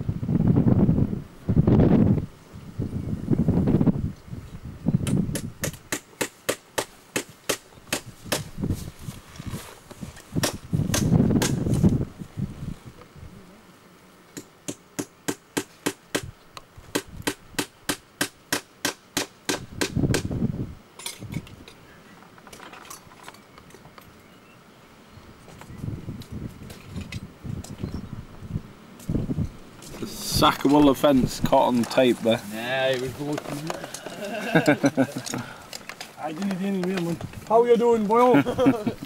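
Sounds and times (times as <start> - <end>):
wind buffeting microphone: 0.0 - 5.9, 7.8 - 13.4, 19.6 - 21.7, 25.5 - 33.6.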